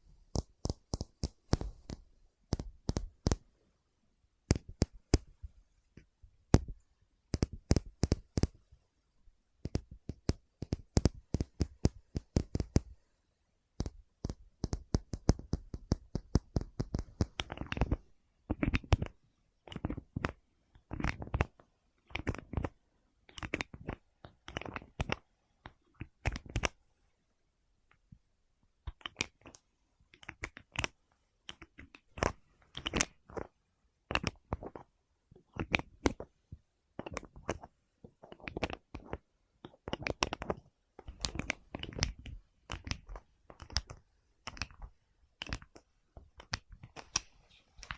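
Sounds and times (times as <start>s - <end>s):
fingers tapping on objects: 0.2s - 3.6s, 4.4s - 8.8s, 9.6s - 13.0s, 13.8s - 26.8s, 28.8s - 47.9s
scratching: 37.0s - 47.9s.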